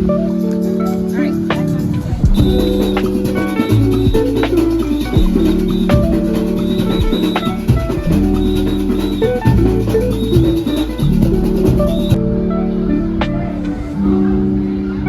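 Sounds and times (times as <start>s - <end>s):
music with drum kit and bass: 0.0s - 12.5s.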